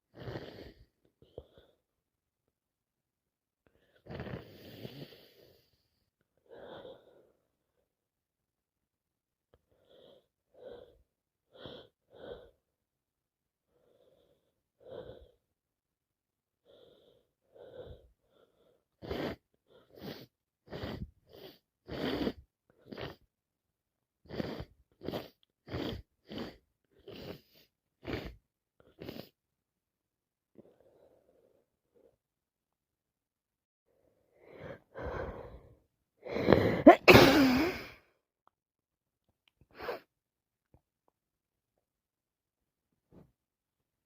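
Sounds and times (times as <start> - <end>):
person congested breathing: 34.0 - 38.1
person sneezing: 36.5 - 38.0.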